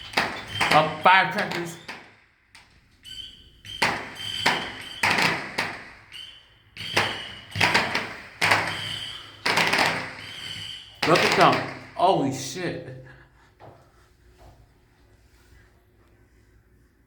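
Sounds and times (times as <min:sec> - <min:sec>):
fireworks bangs: 0:03.8 - 0:12.0.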